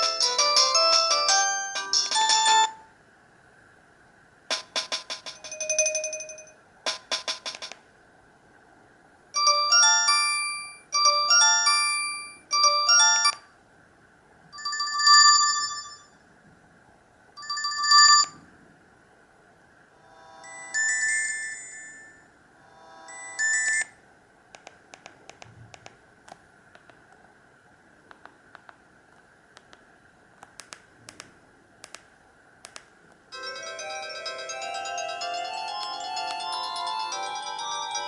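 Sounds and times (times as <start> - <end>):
phone ringtone melodies: 0.0 - 2.9, 5.3 - 6.6, 9.4 - 13.4, 14.6 - 16.1, 17.4 - 18.4, 20.1 - 24.0, 33.4 - 38.0
quick clicks: 30.4 - 33.0.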